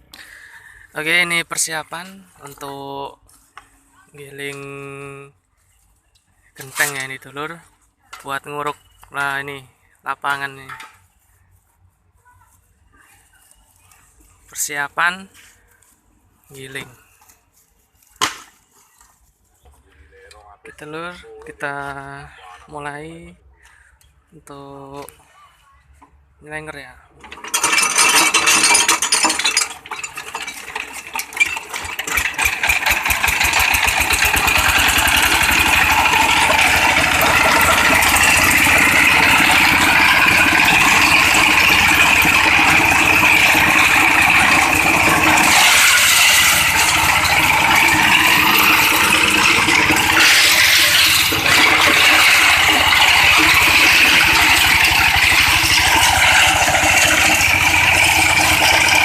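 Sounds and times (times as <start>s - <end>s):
diesel engine hand-cranked: 27.1s - 59.0s
engine rattle: 27.2s - 59.0s.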